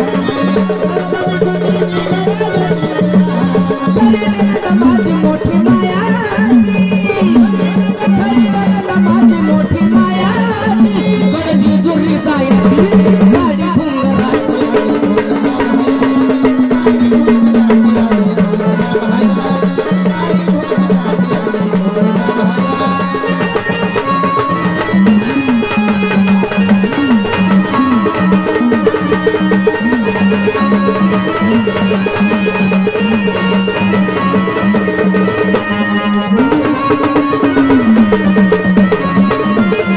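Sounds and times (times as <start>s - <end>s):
rhythmic percussion with rattles: 0.0s - 39.9s
winding melodic line: 14.2s - 39.9s.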